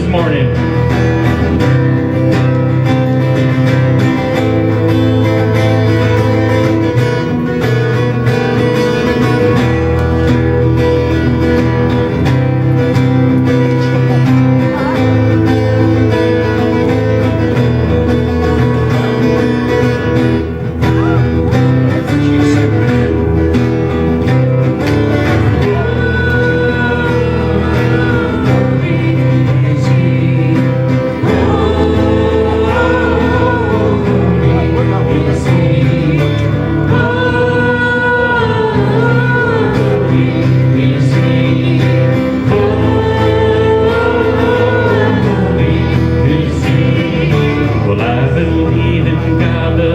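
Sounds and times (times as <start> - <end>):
worship band playing: 0.0 - 49.9
person singing: 25.0 - 49.9.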